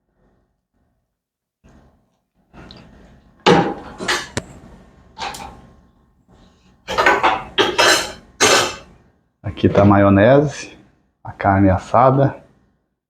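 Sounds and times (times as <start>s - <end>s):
dishes and cutlery clattering: 3.5s - 4.4s, 5.2s - 5.6s, 6.9s - 8.9s.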